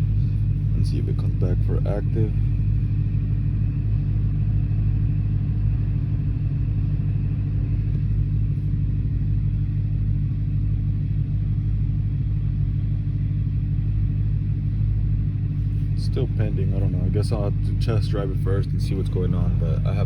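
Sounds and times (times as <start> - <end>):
car engine idling: 0.0 - 20.0.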